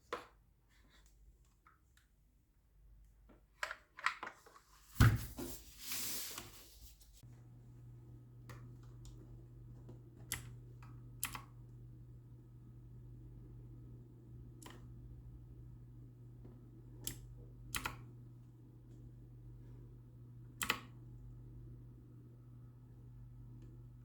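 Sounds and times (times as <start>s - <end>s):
low steady hum: 5.0s - 24.0s
keyboard clicks: 10.2s - 10.6s, 11.2s - 11.5s, 17.0s - 18.0s.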